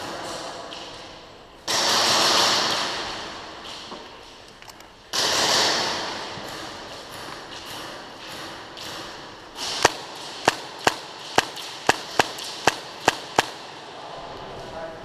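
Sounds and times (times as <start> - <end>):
airsoft gun shots: 1.7 - 3.4, 5.1 - 13.8.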